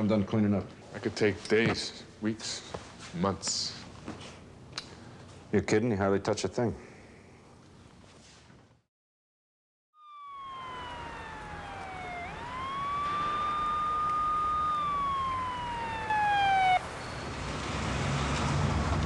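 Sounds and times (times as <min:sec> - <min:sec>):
low background hum: 0:10.0 - 0:17.3
police siren wailing: 0:10.0 - 0:17.4.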